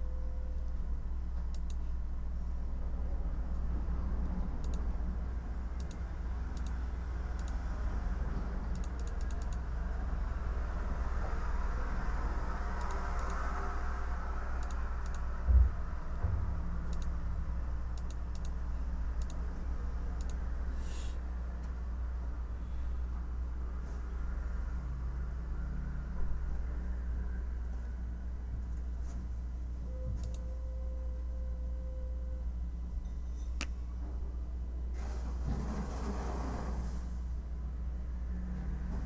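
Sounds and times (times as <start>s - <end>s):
steady low hum: 0.0s - 35.0s
typing on computer keyboard: 8.7s - 9.6s.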